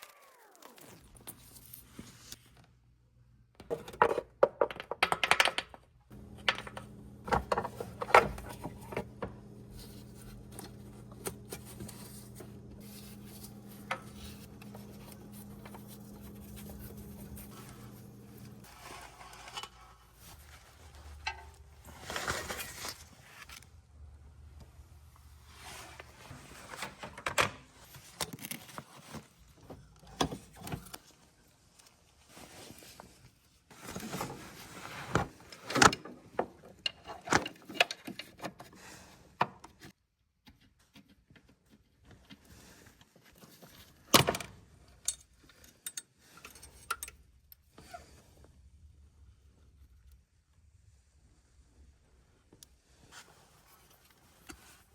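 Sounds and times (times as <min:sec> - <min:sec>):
steady low hum: 0:06.1 - 0:18.7.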